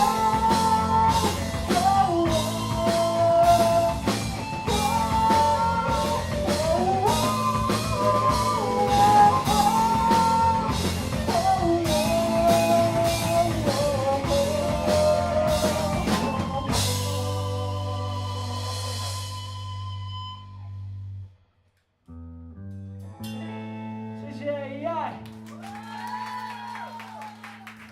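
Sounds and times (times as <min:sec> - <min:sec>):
live rock band playing: 0:00.0 - 0:20.3, 0:23.1 - 0:24.2.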